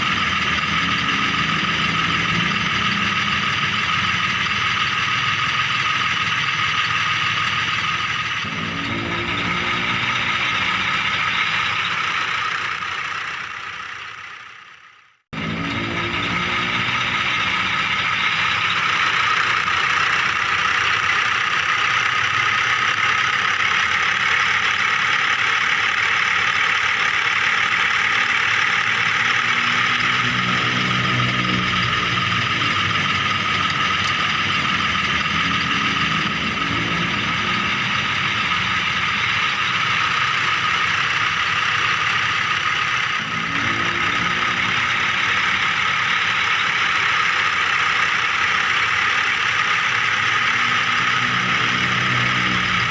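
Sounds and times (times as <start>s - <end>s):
low engine-like hum: 0.0s - 52.9s
toy vehicle motors whirring: 15.4s - 52.9s.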